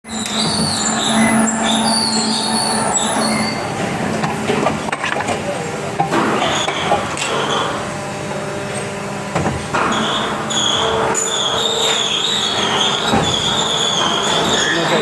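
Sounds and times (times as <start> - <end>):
wavering high whine: 0.0 - 5.0
machine running with hum: 0.1 - 12.9.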